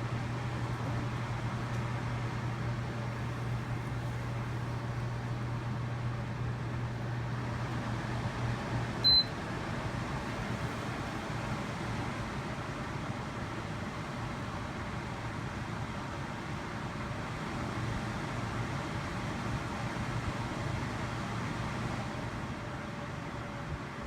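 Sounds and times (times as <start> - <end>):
air cooler running: 0.0 - 24.0
short high beep: 9.0 - 9.3.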